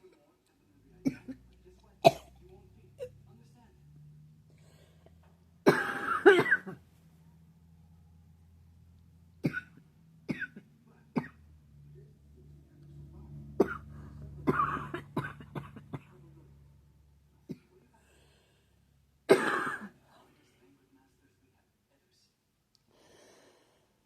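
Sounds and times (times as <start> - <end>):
person coughing: 5.7 - 6.8, 13.6 - 16.1, 19.3 - 20.0.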